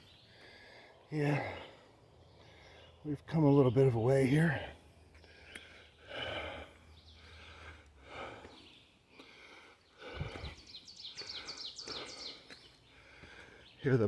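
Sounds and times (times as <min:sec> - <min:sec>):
bird chirping: 0:00.0 - 0:14.0
person breathing hard: 0:00.3 - 0:03.0, 0:05.2 - 0:13.8.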